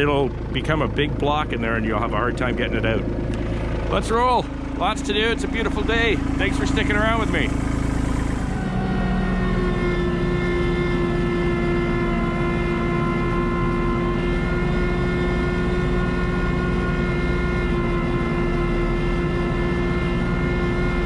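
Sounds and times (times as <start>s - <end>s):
tractor diesel engine rumble: 0.0s - 19.2s
steady whine: 0.0s - 21.0s.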